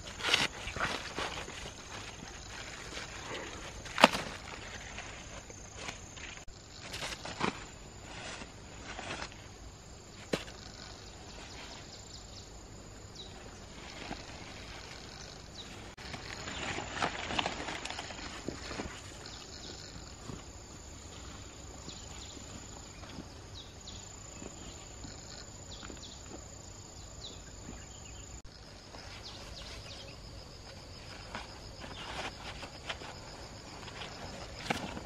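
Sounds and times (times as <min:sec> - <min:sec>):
insects chirping: 0:00.0 - 0:35.0
rustles and light knocks: 0:13.6 - 0:23.4, 0:27.6 - 0:35.0.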